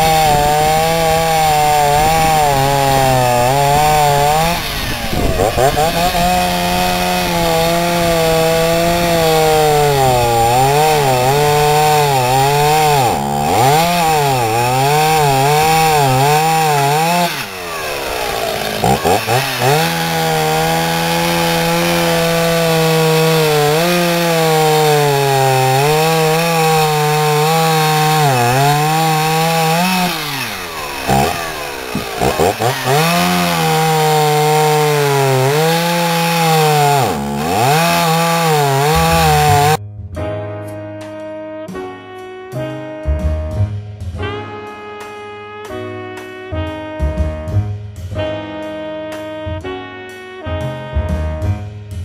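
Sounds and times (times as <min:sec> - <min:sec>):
chainsaw cutting wood: 0:00.0 - 0:39.8.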